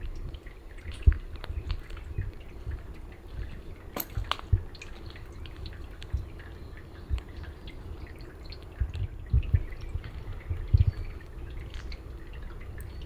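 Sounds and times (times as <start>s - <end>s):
rain dripping: 0.0s - 13.0s.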